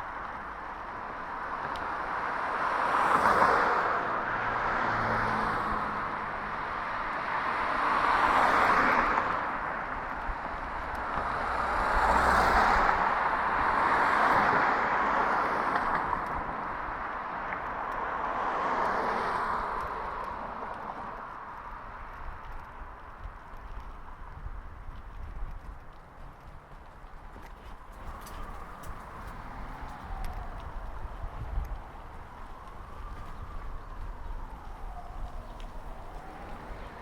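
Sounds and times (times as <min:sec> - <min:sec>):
cars passing: 0:00.0 - 0:37.0.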